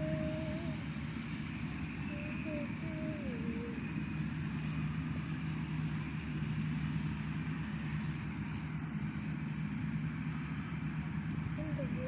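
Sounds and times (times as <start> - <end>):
machine engine running: 0.0 - 12.0.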